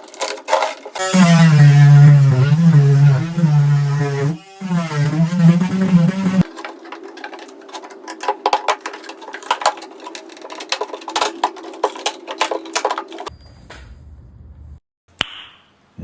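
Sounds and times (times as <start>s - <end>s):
steady hum: 1.0s - 6.5s.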